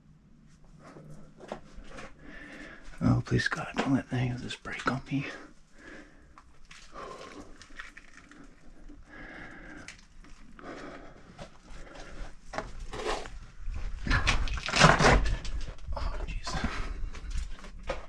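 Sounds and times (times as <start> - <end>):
heavy breathing: 0.8 - 3.0, 5.2 - 12.7, 15.2 - 18.0.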